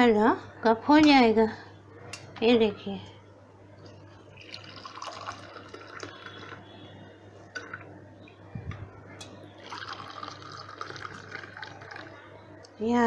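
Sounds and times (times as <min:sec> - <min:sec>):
tea pouring into a cup: 0:03.9 - 0:06.7, 0:09.6 - 0:12.3.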